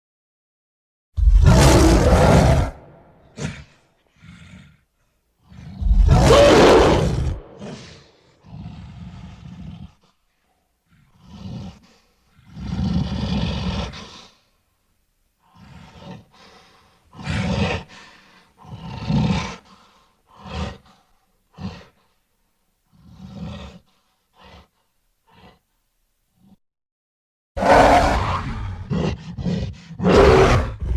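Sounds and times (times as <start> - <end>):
gorilla roaring: 1.2 - 10.1, 10.9 - 14.4, 15.5 - 22.0, 22.9 - 24.7, 25.3 - 25.6, 27.6 - 30.9.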